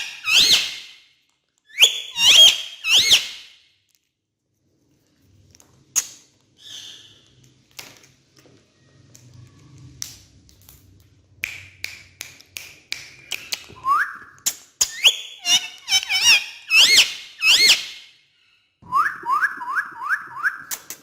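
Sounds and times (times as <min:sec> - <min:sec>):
parrot whistling: 0:00.0 - 0:00.9, 0:01.7 - 0:03.5, 0:13.8 - 0:14.3, 0:14.9 - 0:18.0, 0:18.9 - 0:20.7.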